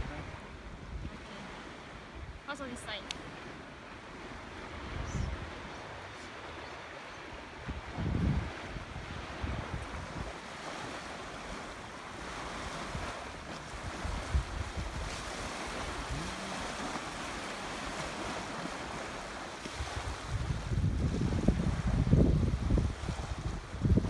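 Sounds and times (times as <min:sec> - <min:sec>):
wind buffeting microphone: 0:03.2 - 0:24.0.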